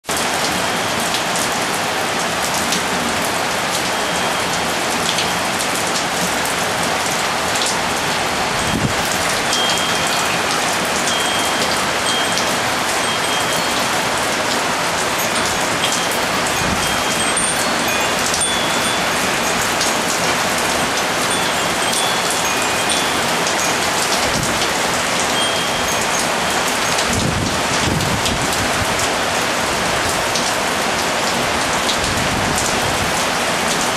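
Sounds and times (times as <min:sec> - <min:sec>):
heavy rain on hard surfaces: 0:00.0 - 0:33.9
wind chime notes: 0:03.2 - 0:28.7.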